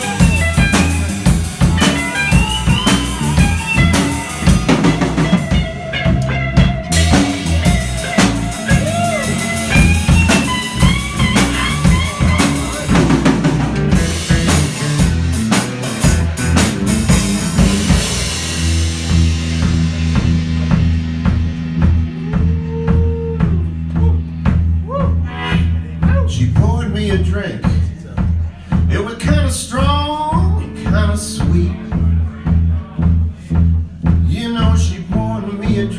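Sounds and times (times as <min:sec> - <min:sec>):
lead instrument bending notes: 0:00.0 - 0:20.8
bass line: 0:00.0 - 0:35.9
drum kit: 0:00.0 - 0:35.9.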